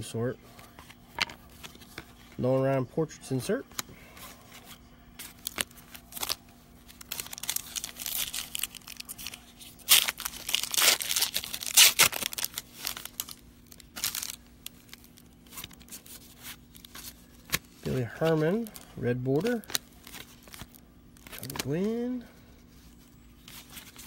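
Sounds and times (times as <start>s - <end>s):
wrappers tearing and crinkling: 5.2s - 22.2s, 22.8s - 24.0s.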